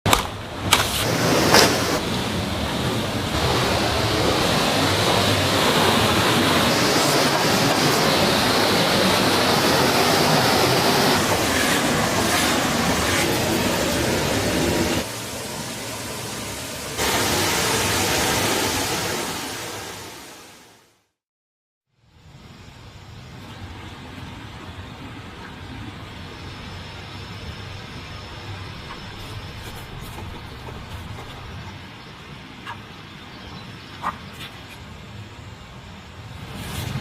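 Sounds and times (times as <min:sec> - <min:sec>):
stream water rushing: 0:00.3 - 0:20.7.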